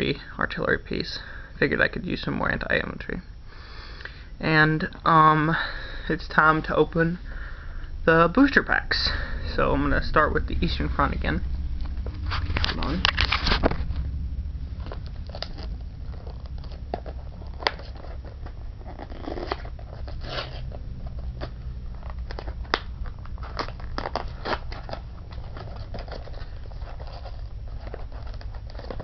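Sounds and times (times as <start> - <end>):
steady low hum: 0.0 - 29.0
packaging clicking crinkling and tearing: 14.9 - 29.0.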